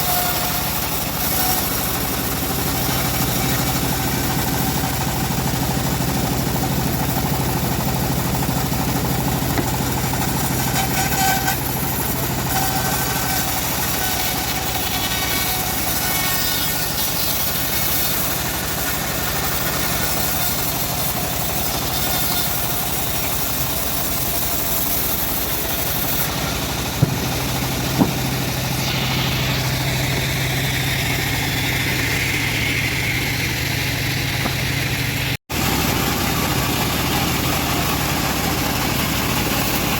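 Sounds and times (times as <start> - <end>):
bandsaw sawmill running: 0.0 - 39.9
sharp knocks: 9.5 - 10.0, 27.0 - 28.5.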